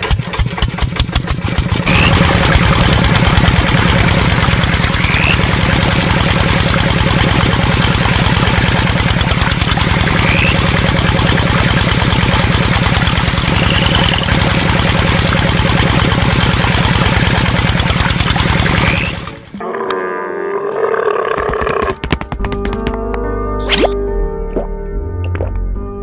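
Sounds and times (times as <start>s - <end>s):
small engine chugging: 0.0s - 19.6s.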